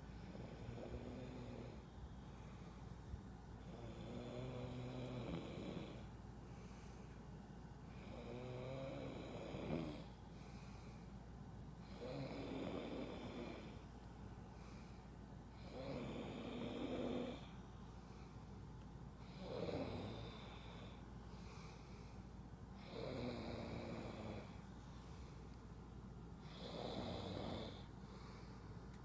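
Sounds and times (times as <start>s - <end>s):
person snoring: 0.2s - 1.8s, 3.6s - 6.1s, 7.9s - 10.1s, 11.8s - 13.8s, 15.6s - 17.5s, 19.2s - 21.8s, 22.8s - 24.6s, 26.4s - 28.0s.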